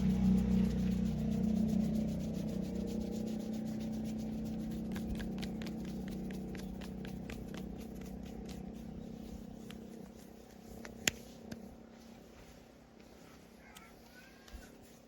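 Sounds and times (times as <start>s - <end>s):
low steady hum: 0.0s - 15.0s
hands rubbing clicks: 2.4s - 11.7s.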